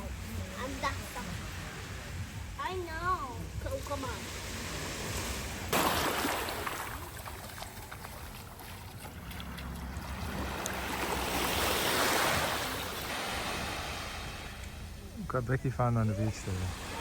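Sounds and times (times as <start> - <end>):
sea waves washing onto shore: 0.0 - 15.0, 15.8 - 17.0.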